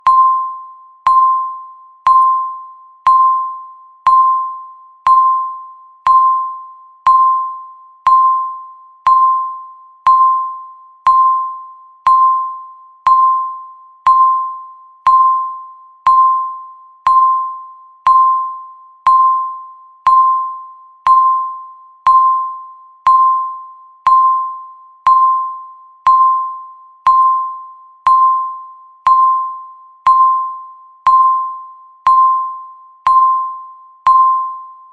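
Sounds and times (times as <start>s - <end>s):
timer ticking: 8.0s - 17.5s, 26.1s - 28.4s, 29.0s - 34.6s.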